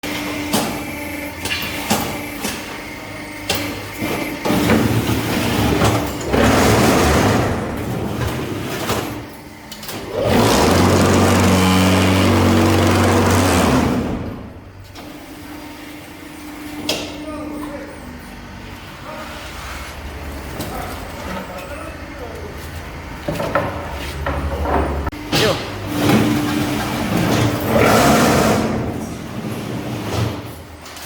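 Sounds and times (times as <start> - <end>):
vibrator motors buzzing: 0.0 - 16.9.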